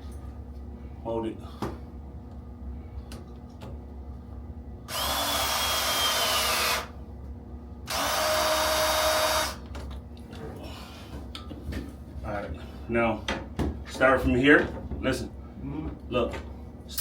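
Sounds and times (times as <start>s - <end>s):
power drill whining: 4.9s - 6.9s, 7.9s - 9.6s.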